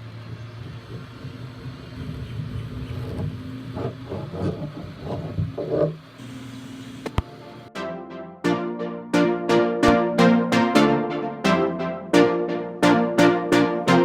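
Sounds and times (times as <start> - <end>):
car engine and road noise: 0.0 - 4.8.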